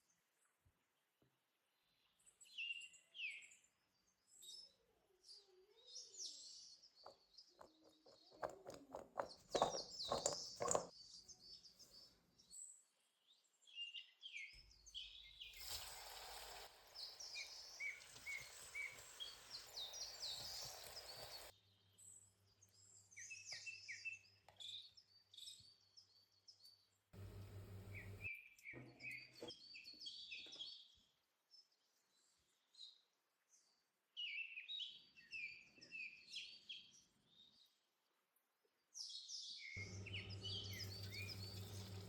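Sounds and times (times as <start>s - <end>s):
small birds chirping: 1.8s - 37.9s, 38.8s - 42.0s
hiss: 15.5s - 21.5s.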